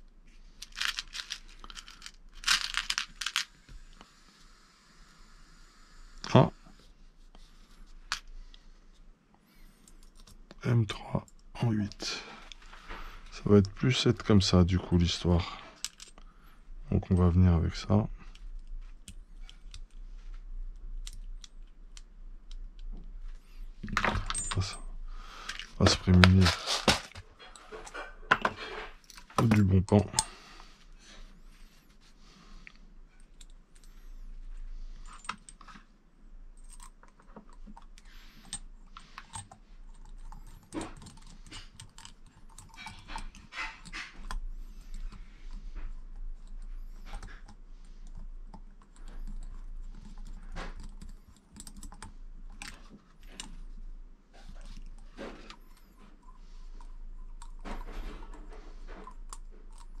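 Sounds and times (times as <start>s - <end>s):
small screws and parts rattling: 0.5s - 3.8s, 14.9s - 16.3s, 23.8s - 30.4s.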